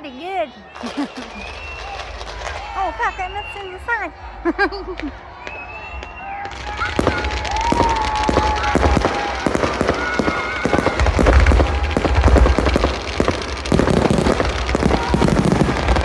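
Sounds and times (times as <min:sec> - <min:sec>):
fireworks cracks and bangs: 0:00.7 - 0:16.0
deep booming rumbles: 0:10.7 - 0:16.0.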